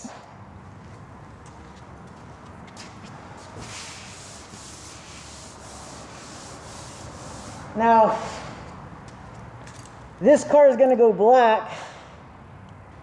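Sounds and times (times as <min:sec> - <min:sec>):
sandpaper rubbing on metal: 0:03.4 - 0:08.5.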